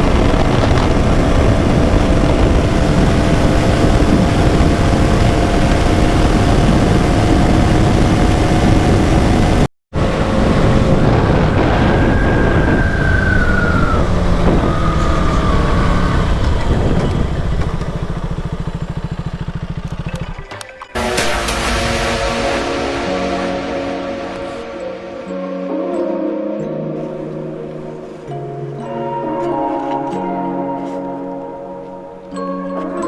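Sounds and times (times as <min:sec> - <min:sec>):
motorcycle engine running: 0:00.0 - 0:24.6
road and wind noise: 0:00.0 - 0:25.3, 0:27.0 - 0:33.0.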